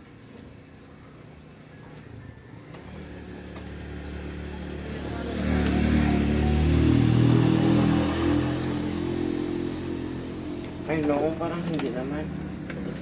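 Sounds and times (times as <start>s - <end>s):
vehicle engine passing by: 2.6s - 13.0s.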